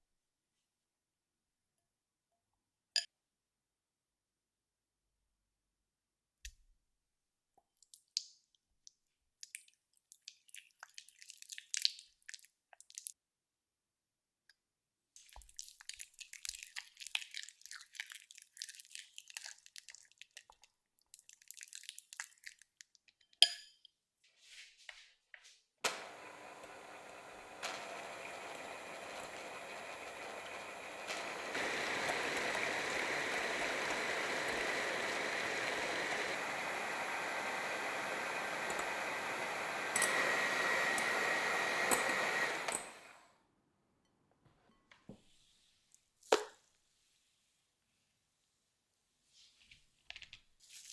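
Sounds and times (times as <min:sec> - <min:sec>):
batter squishing in a bowl: 0:15.2 - 0:23.4
electric hand mixer whipping: 0:25.8 - 0:43.3.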